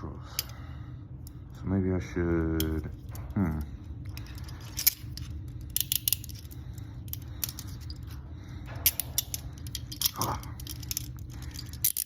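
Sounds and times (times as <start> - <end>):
handcuffs clinking and clicking: 0.4 - 0.6, 2.6 - 12.0.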